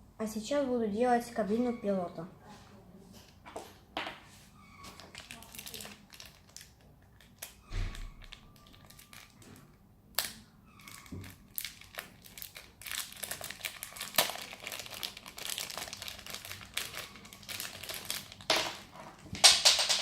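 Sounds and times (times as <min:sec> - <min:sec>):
rustling of plastic kit parts: 0:04.9 - 0:09.7, 0:10.8 - 0:20.0.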